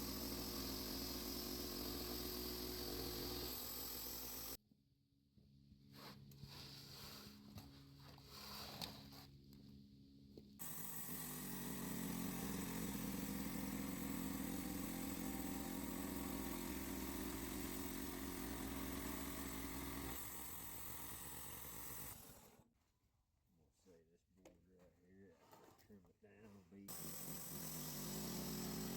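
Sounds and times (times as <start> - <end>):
small gasoline engine running: 0.0 - 4.6, 10.6 - 22.6, 26.9 - 28.9.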